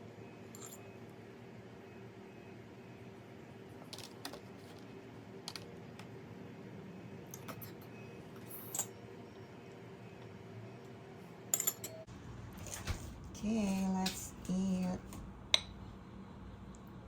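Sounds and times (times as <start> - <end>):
faint steady hum: 0.0 - 17.0
tableware clicking and tapping: 0.6 - 0.8, 11.5 - 12.0, 15.6 - 15.8.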